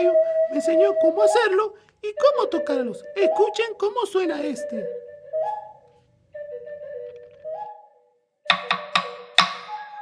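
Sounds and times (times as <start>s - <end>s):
wooden slit drum beats: 8.5s - 10.0s.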